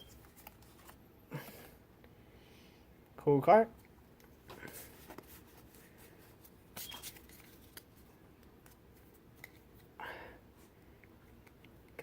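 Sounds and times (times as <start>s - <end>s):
trading cards rustling: 4.7s - 8.1s.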